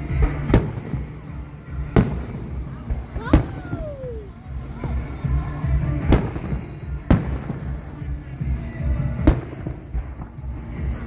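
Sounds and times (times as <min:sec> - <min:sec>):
background music: 0:00.0 - 0:11.0
loud sharp bangs: 0:06.0 - 0:07.8.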